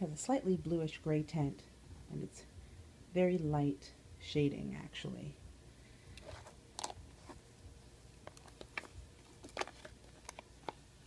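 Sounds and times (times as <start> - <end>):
soft rustling: 6.2 - 7.6, 8.2 - 11.0.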